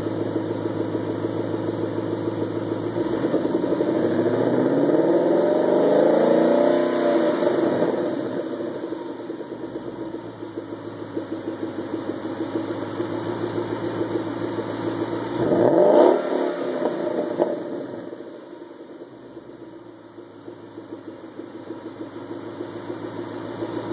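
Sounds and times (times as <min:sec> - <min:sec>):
car engine idling and revving: 0:00.0 - 0:23.9.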